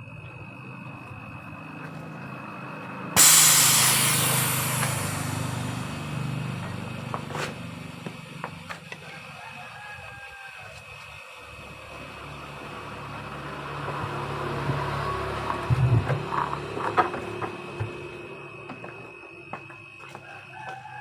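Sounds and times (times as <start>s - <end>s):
pressurised gas hissing: 3.2s - 6.9s
low hum: 3.2s - 7.0s.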